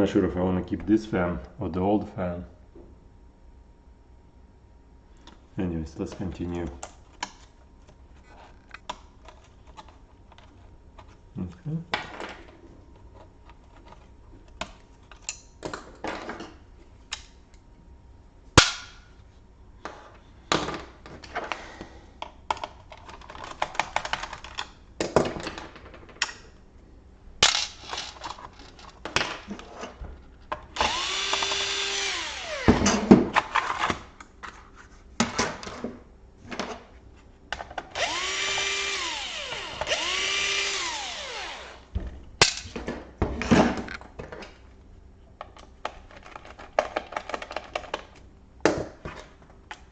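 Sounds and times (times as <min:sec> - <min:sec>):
plastic parts clicking and knocking: 0:22.2 - 0:26.5, 0:45.4 - 0:49.9
electric screwdriver motor whirring: 0:30.8 - 0:32.8, 0:38.0 - 0:41.9.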